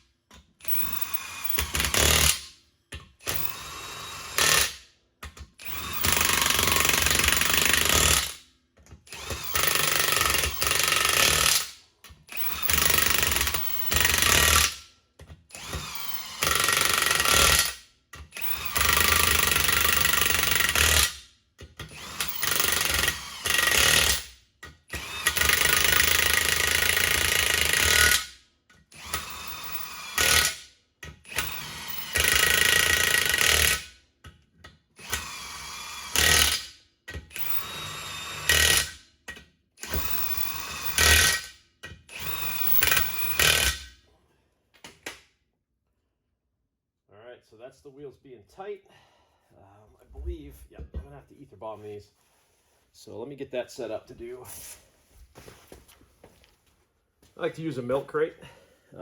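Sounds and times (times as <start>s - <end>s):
impact wrench whining: 0.6s - 2.5s, 5.5s - 8.4s, 9.1s - 14.9s, 15.5s - 21.2s, 35.0s - 39.1s, 39.8s - 44.0s.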